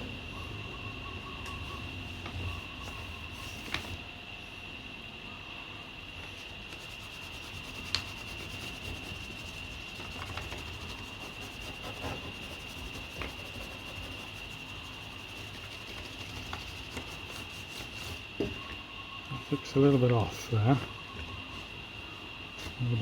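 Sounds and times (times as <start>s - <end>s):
high-pitched whine: 0.0s - 23.0s
pencil scratching on paper: 6.4s - 18.2s.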